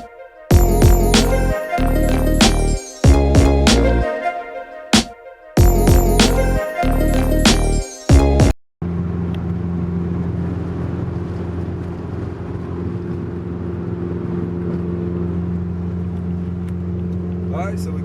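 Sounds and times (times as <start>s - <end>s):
road noise: 8.8s - 18.0s.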